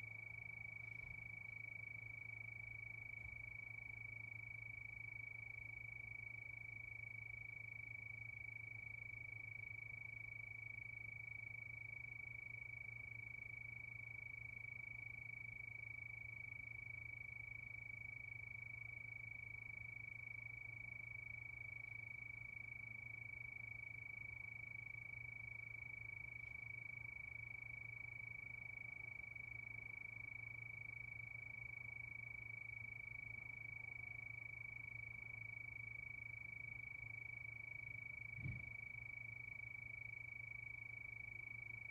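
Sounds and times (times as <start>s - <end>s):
faint low hum: 0.0s - 41.9s.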